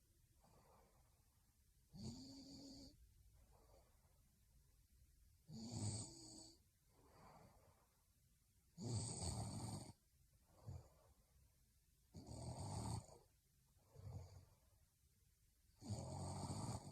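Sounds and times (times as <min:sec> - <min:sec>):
soft breath: 0:00.3 - 0:01.5, 0:02.5 - 0:04.4, 0:06.5 - 0:08.2, 0:10.4 - 0:11.4
woman snoring: 0:01.9 - 0:03.0, 0:05.5 - 0:07.6, 0:08.8 - 0:10.0, 0:12.2 - 0:13.2, 0:15.8 - 0:16.9.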